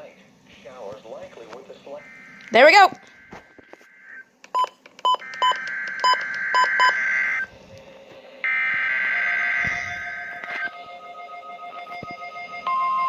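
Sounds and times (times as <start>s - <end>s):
raspy electronic data bursts: 1.8s - 4.3s, 5.0s - 7.5s, 8.4s - 12.6s.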